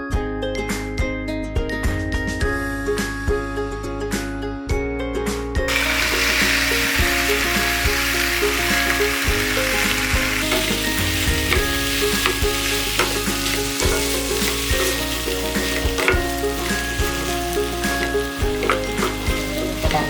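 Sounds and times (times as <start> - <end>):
food frying in oil: 5.7 - 20.0.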